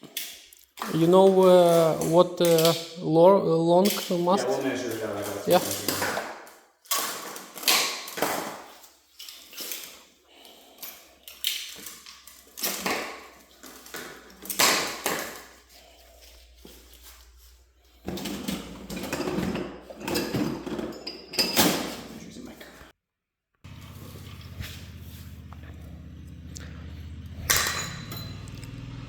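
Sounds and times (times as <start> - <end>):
pipe and tools handled on surface: 8.2 - 10.2, 10.8 - 22.3.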